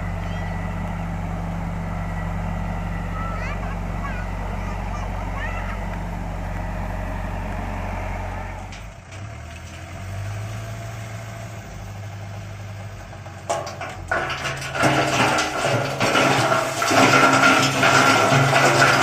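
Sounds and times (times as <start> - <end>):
diesel engine running: 0.0 - 19.0.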